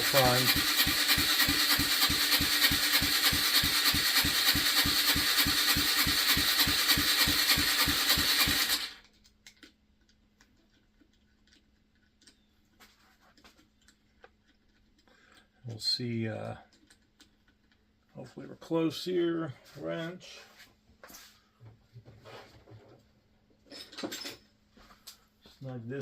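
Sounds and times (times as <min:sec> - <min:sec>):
engine cranking on starter: 0:00.0 - 0:09.0.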